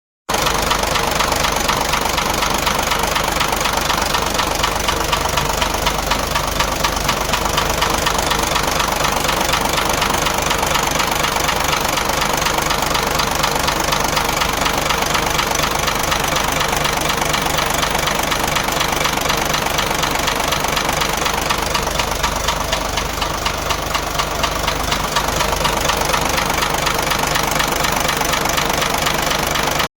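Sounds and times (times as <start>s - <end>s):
engine idling: 0.3s - 29.9s
rapid knocking clatter: 0.3s - 29.9s.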